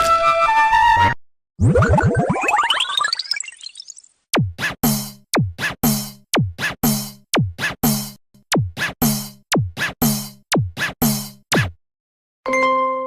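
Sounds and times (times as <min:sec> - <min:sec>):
drum machine beat: 0:04.3 - 0:11.8.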